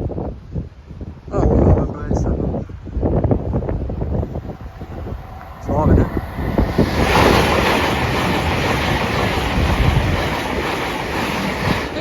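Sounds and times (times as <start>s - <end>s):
wind buffeting microphone: 0.0s - 12.0s
train passing at speed: 3.0s - 12.0s.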